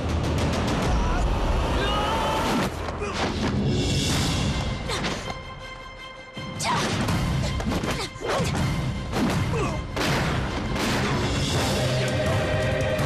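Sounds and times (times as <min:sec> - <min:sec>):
dramatic music: 0:00.0 - 0:13.0.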